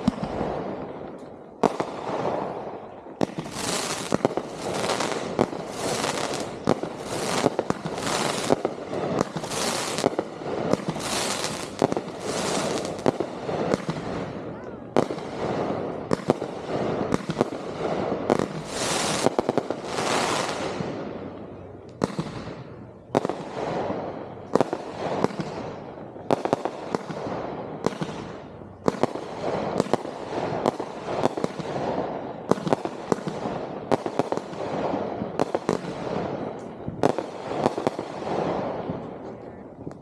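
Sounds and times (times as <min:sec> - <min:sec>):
fireworks bangs: 0:00.0 - 0:40.0
firework hiss: 0:03.4 - 0:14.4, 0:16.6 - 0:20.9.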